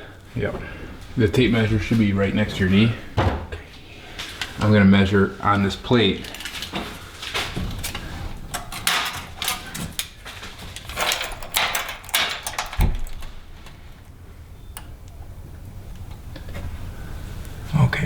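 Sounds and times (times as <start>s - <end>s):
dull thud: 3.2s - 3.6s.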